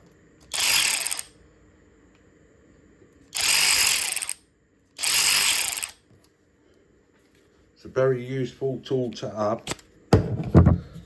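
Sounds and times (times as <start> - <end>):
cordless ratchet motor bursts: 0.5 - 1.4, 3.3 - 4.4, 5.0 - 6.0.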